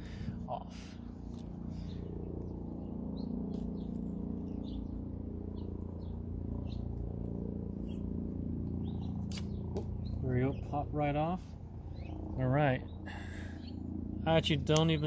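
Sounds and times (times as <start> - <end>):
steady low hum: 0.0 - 15.0
small bird chirping: 1.7 - 7.1, 7.8 - 10.9, 11.8 - 13.8.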